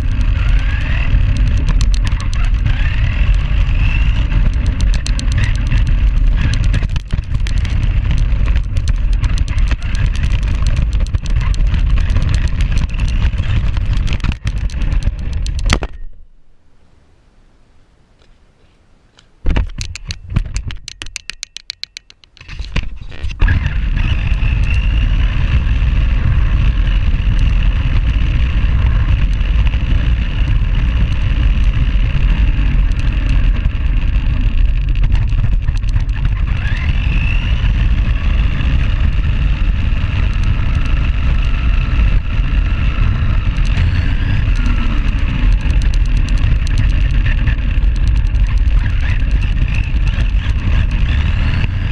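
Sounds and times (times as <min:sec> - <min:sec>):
crunchy gear mesh: 0:00.0 - 0:16.0
electric motor whine: 0:00.0 - 0:16.0, 0:23.1 - 0:51.9
rapid clicking and rattling: 0:00.0 - 0:16.0, 0:19.5 - 0:51.9
wheels and chassis rumbling: 0:00.0 - 0:51.9.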